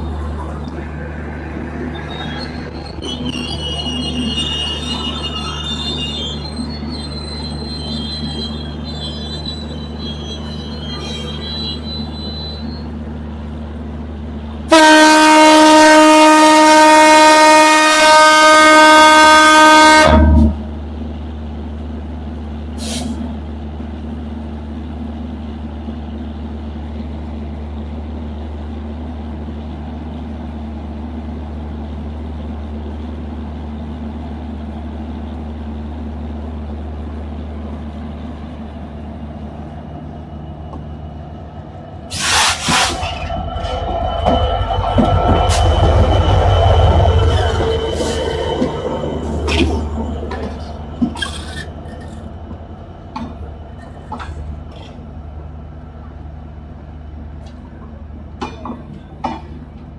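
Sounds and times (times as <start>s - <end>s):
locomotive engine humming: 0.0s - 59.9s
train horn blast: 14.7s - 20.8s.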